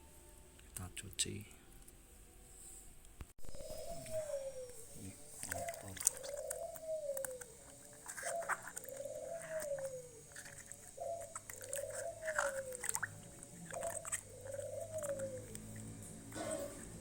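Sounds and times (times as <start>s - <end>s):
animal call: 3.4s - 17.0s.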